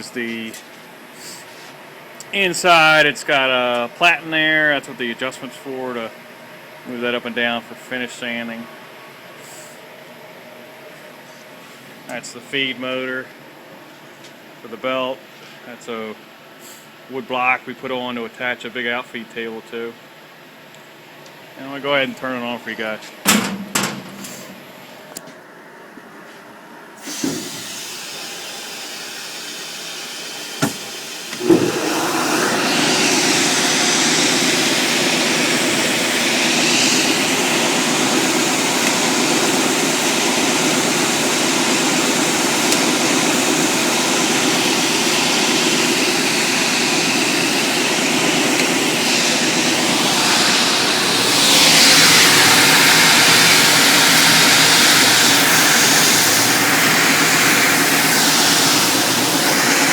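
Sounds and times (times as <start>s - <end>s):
belt sander motor humming: 30.3s - 59.9s
sharp click and thump: 30.6s - 31.7s.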